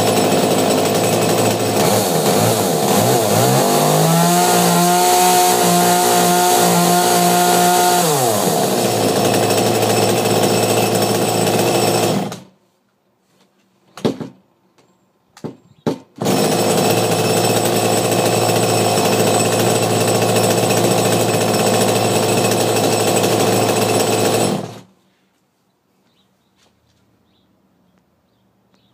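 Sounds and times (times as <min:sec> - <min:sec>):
chainsaw engine revving: 0:00.0 - 0:12.5, 0:16.2 - 0:24.9.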